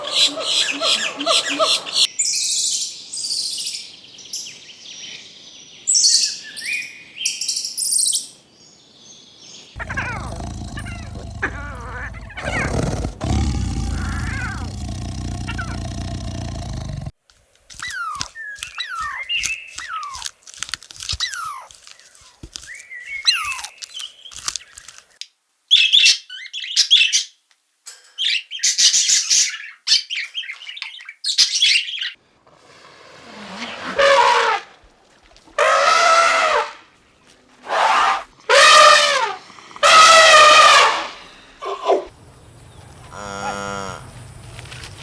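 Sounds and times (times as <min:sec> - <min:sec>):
birds chirping: 0:09.7 - 0:17.1, 0:38.7 - 0:45.0
harsh raspy animal calls: 0:09.8 - 0:17.2, 0:37.6 - 0:42.1.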